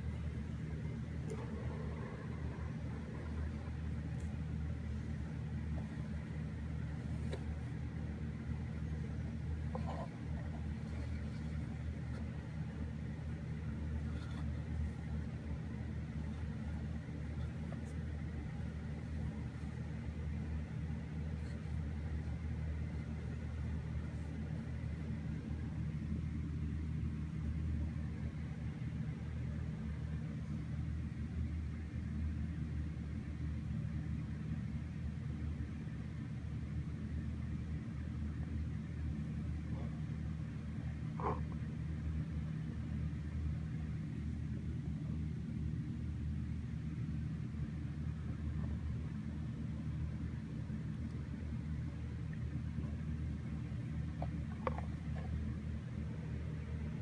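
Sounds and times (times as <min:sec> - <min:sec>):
steady low rumble: 0:00.0 - 0:32.0
low mechanical hum: 0:00.0 - 0:57.0.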